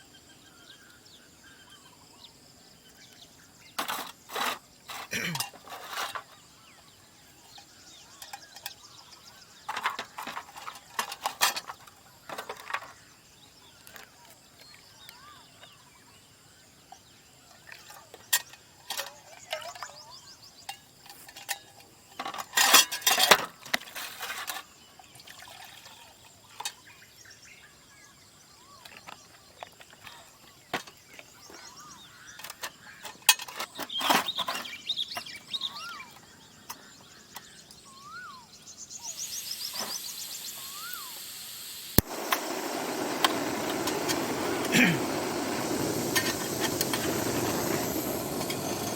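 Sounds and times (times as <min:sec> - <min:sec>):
clinks of things being handled: 0:03.8 - 0:06.4, 0:20.6 - 0:24.7, 0:32.4 - 0:35.3
bird whistles: 0:37.9 - 0:41.8
steady hiss: 0:38.5 - 0:48.9.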